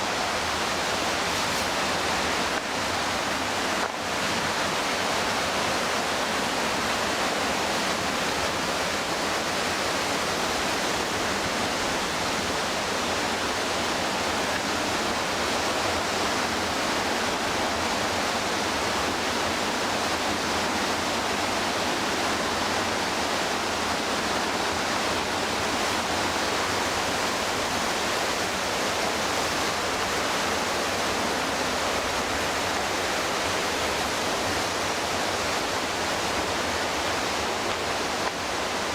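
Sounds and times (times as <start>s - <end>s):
roar of whitewater and falls: 0.0s - 38.9s.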